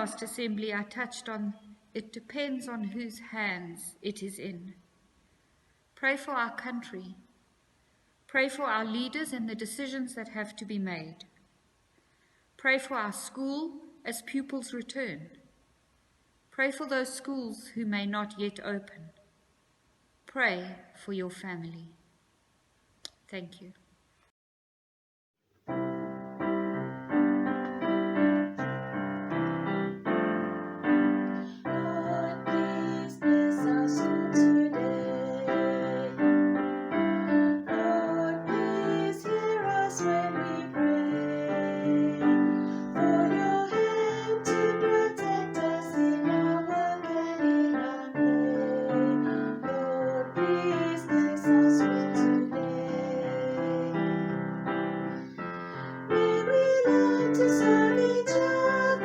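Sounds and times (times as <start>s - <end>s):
piano music: 25.7s - 59.0s.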